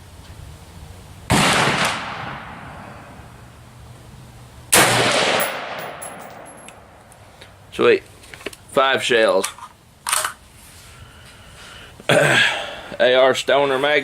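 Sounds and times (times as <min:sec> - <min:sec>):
rifle shots with echo: 0:01.3 - 0:02.6, 0:04.7 - 0:06.5.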